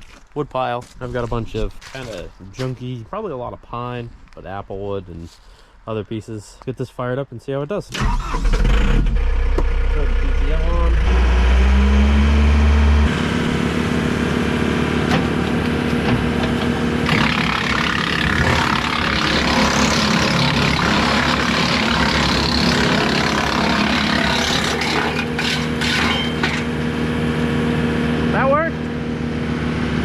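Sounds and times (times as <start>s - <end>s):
tractor engine revving: 8.0s - 30.0s
wood chipper whirring: 8.4s - 30.0s.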